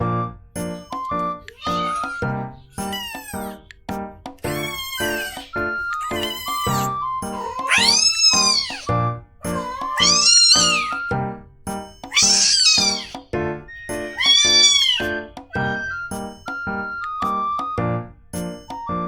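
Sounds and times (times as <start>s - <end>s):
background music: 0.0s - 19.0s
kitten meowing: 1.0s - 3.7s, 4.4s - 11.2s, 12.0s - 17.1s.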